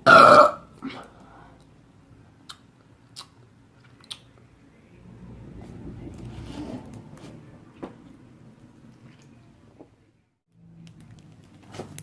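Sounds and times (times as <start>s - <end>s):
person gulping a drink: 0.0s - 1.1s.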